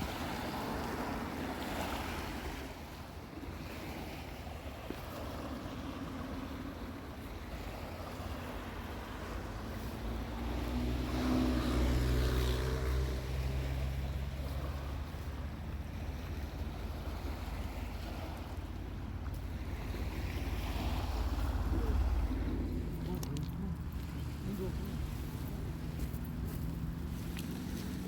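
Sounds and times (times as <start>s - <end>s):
ocean surf on beach: 0.0s - 28.0s
low droning hum: 10.5s - 28.0s.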